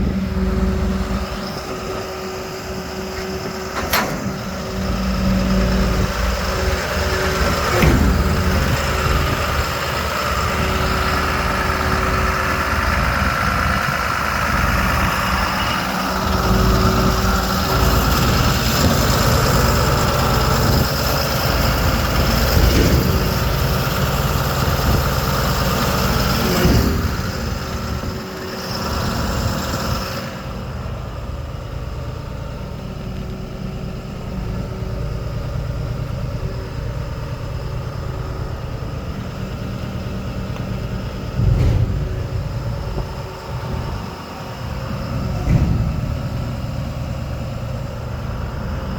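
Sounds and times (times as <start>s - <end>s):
truck diesel engine running: 0.0s - 48.9s
sharp knocks: 41.3s - 44.1s.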